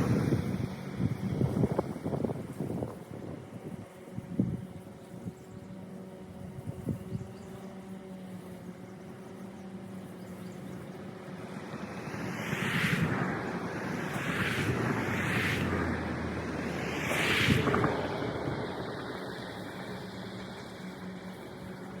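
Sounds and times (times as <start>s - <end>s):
lawn mower humming: 0.0s - 22.0s
loud rushing noise: 11.5s - 19.3s.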